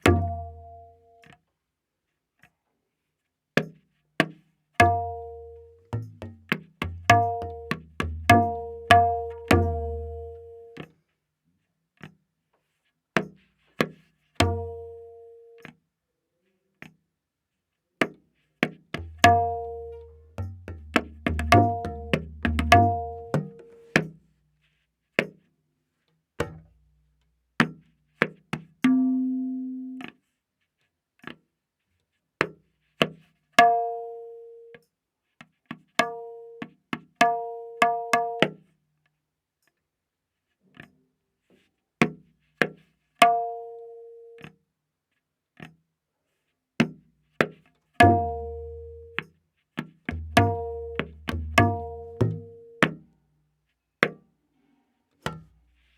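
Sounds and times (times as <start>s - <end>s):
tabla playing: 0.0s - 0.9s, 4.8s - 10.9s, 14.4s - 15.0s, 19.0s - 24.2s, 26.4s - 26.7s, 28.8s - 30.1s, 37.2s - 38.5s, 48.0s - 49.3s, 50.1s - 53.0s.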